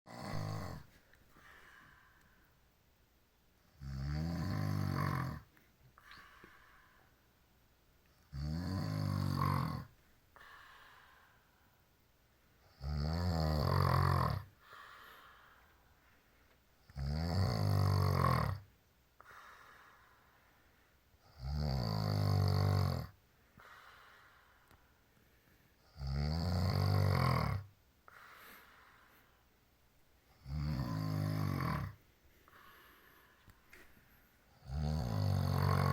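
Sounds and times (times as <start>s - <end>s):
loud deep snoring: 0.1s - 0.9s, 3.7s - 5.5s, 8.3s - 9.9s, 12.7s - 14.5s, 16.9s - 18.7s, 21.3s - 23.2s, 25.9s - 27.7s, 30.4s - 32.0s, 34.6s - 35.9s
breathing out: 10.4s - 11.6s.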